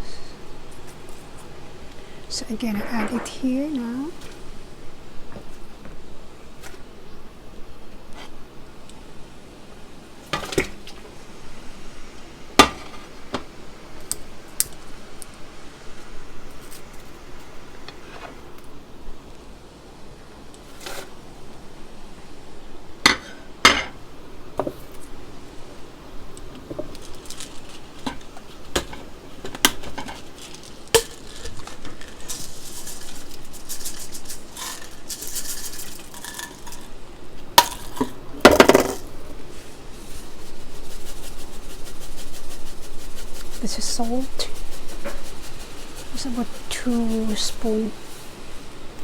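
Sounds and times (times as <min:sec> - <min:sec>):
soft hiss: 0:00.0 - 0:49.0
utensils clinking against pot: 0:30.9 - 0:36.9.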